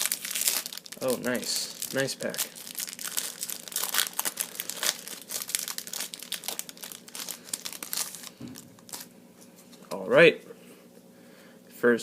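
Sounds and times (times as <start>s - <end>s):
foil wrapper crinkling: 0.0s - 9.1s.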